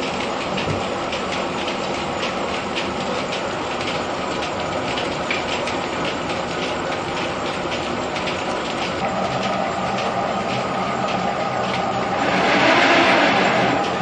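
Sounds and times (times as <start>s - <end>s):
threshing machine rumbling: 4.8s - 14.0s.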